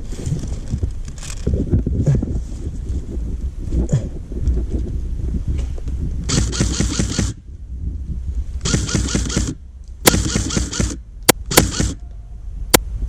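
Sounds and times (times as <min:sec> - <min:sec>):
airsoft gun firing: 0:06.3 - 0:07.4, 0:08.6 - 0:12.0.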